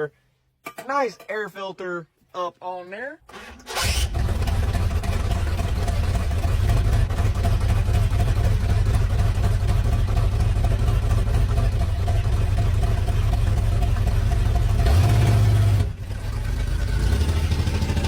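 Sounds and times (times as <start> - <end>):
car engine running: 3.8 - 18.0.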